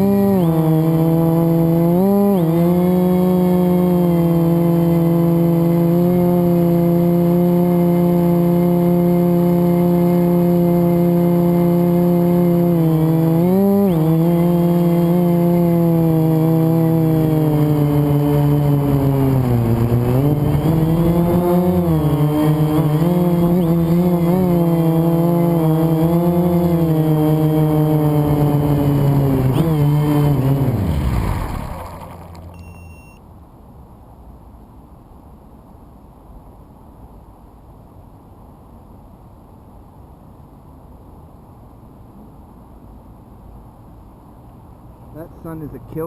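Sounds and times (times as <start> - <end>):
quadcopter motors whining: 0.0 - 33.2.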